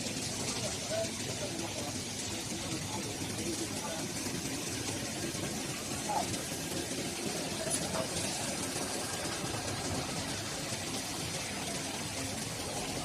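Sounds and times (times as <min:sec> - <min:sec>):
machine humming and hissing: 0:00.0 - 0:13.0.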